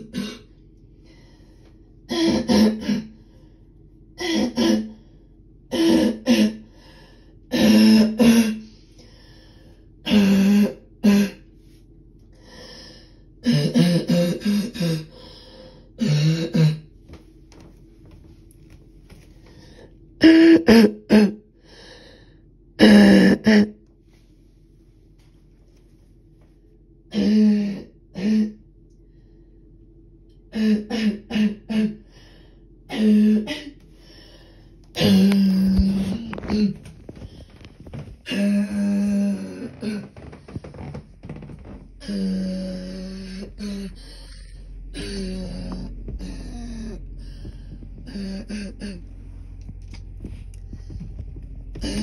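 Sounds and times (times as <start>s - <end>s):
person coughing: 2.1s - 3.1s, 32.9s - 33.8s.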